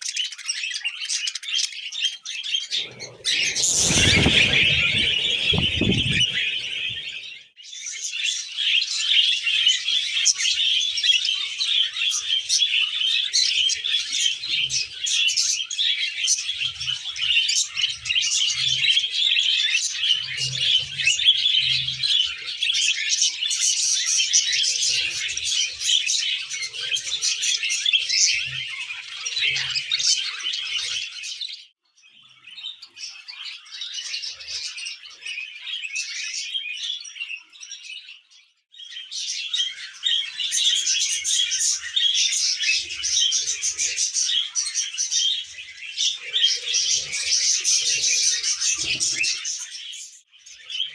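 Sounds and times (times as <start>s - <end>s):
budgerigars chattering: 0.1s - 7.3s.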